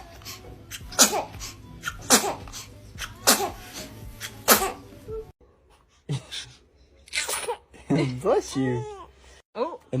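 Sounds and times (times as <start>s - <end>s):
baby sneezing: 0.7s - 4.9s, 7.1s - 7.6s.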